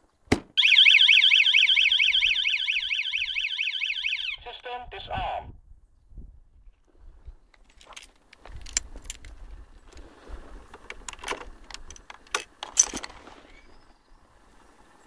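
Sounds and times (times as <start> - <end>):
keys jangling: 11.1 - 13.2.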